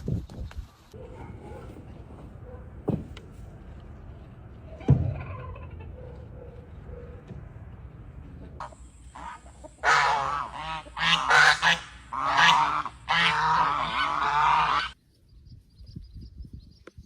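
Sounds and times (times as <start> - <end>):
goose honking: 5.1 - 6.0, 8.6 - 15.0.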